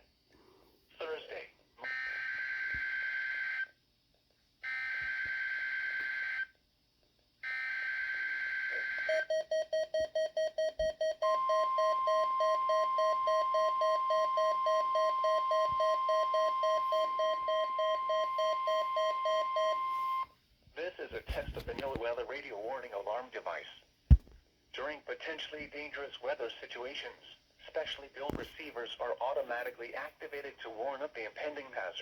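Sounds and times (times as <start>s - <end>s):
steady warning alarm tone: 7.4s - 20.3s
rapid alarm beeping: 7.5s - 20.3s.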